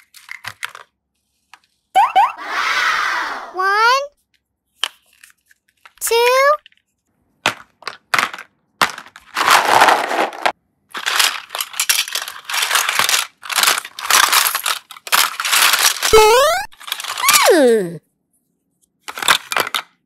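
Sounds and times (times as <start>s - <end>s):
crunchy crushing noises: 7.7s - 16.1s.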